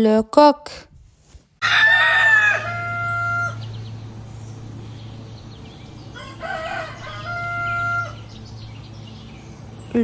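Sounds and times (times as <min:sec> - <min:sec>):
steady low hum: 0:00.8 - 0:10.0
rooster crowing: 0:01.6 - 0:04.2, 0:05.6 - 0:08.6.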